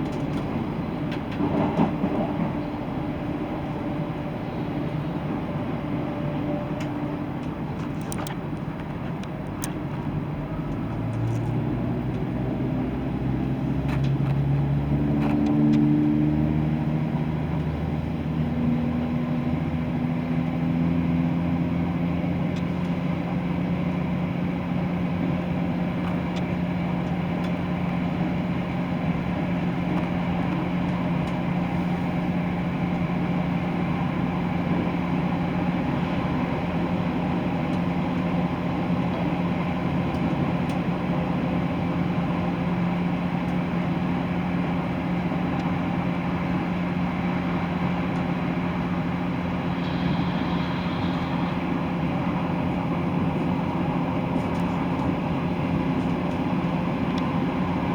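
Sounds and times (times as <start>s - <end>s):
train wheels rumbling: 0.0s - 9.3s, 22.3s - 57.9s
train diesel engine howling: 0.0s - 57.9s.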